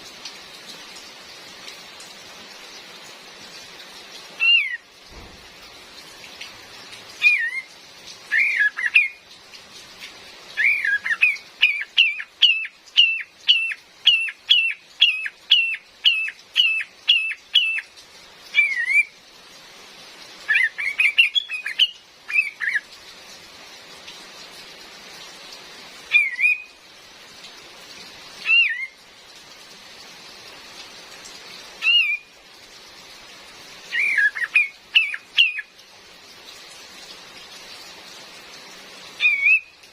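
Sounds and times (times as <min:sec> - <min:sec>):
rain hiss: 0:00.0 - 0:39.9
bulbul whistled calls: 0:08.3 - 0:09.2, 0:10.6 - 0:17.9, 0:18.5 - 0:19.1, 0:20.5 - 0:22.8, 0:26.1 - 0:26.7, 0:28.4 - 0:29.0, 0:33.9 - 0:35.7, 0:39.2 - 0:39.7.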